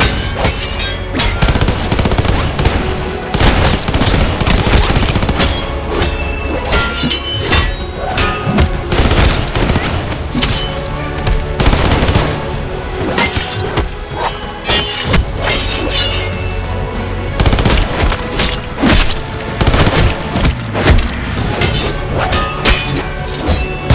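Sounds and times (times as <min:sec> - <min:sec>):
punches and hits: 0:00.0 - 0:12.4, 0:17.6 - 0:23.9.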